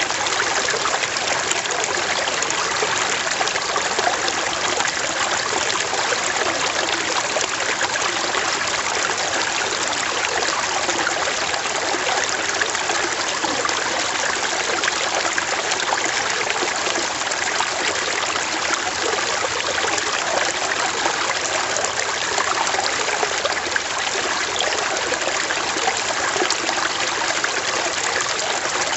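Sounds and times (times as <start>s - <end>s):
stream flowing over rocks: 0.0s - 28.9s.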